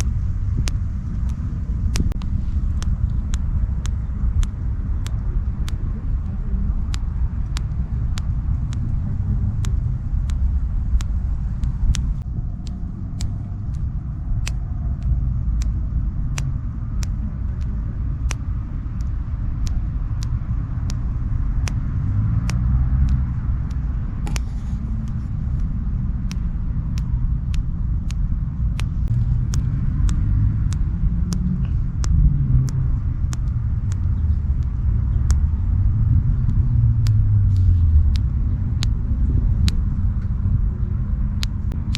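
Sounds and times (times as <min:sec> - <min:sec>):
low rumble: 0:00.0 - 0:41.9
sharp clicks: 0:00.0 - 0:41.9.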